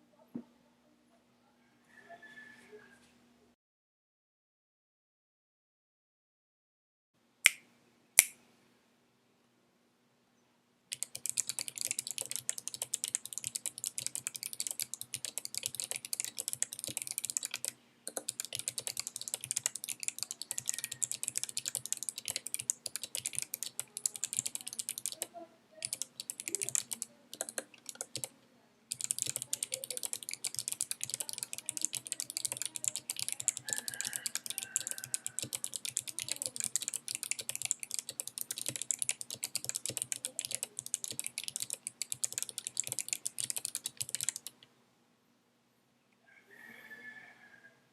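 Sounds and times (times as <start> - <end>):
fast typing on mechanical keyboard: 10.9 - 28.3, 28.9 - 44.6.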